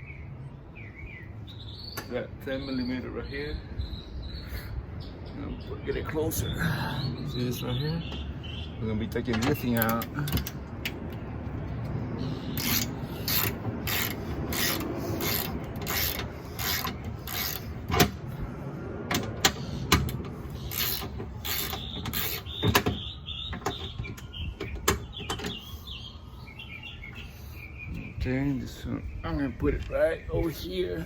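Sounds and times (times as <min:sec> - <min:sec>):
ratchet wrench ratcheting: 0:12.5 - 0:18.1, 0:20.1 - 0:22.6.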